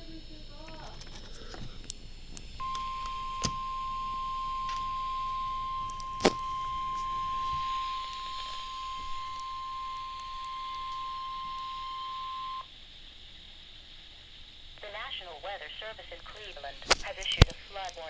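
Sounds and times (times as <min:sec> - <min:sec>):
steady warning alarm tone: 0:00.0 - 0:12.7
sharp clicks: 0:05.8 - 0:11.8.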